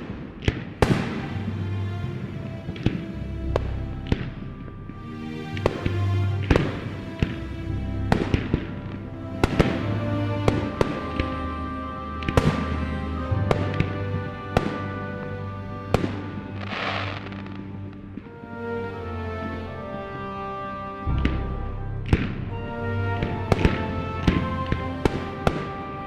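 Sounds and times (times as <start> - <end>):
music with sustained notes: 0.0 - 26.0
fireworks crackling: 16.0 - 17.7.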